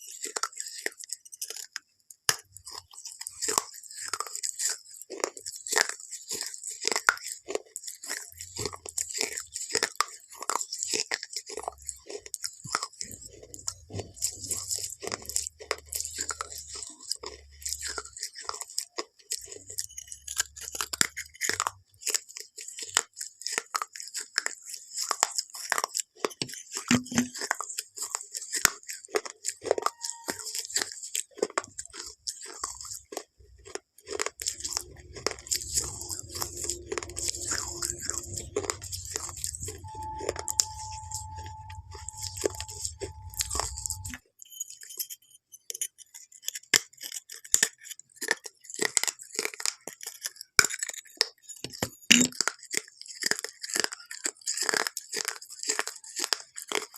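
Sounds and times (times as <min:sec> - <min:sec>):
chewing crisp food: 0:00.0 - 0:44.2, 0:45.7 - 0:56.9
steady low hum: 0:34.4 - 0:44.2.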